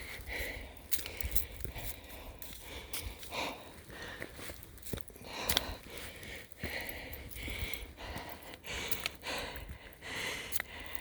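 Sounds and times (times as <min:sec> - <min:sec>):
person breathing hard: 0:00.0 - 0:11.0.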